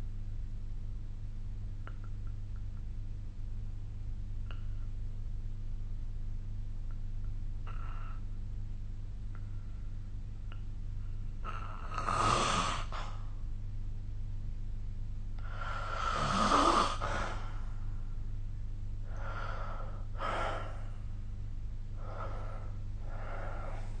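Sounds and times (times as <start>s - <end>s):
person snoring: 11.4s - 13.2s, 15.4s - 17.6s, 22.0s - 24.0s.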